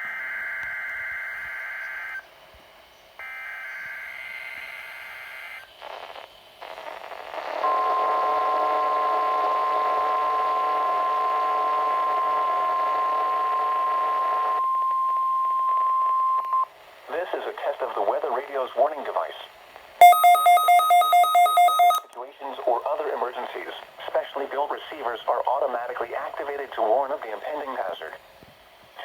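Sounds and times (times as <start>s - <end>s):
radio hiss: 17.0s - 19.9s, 22.2s - 29.0s
buzzy digital header tones: 20.0s - 22.0s
steady warning alarm tone: 20.0s - 22.1s.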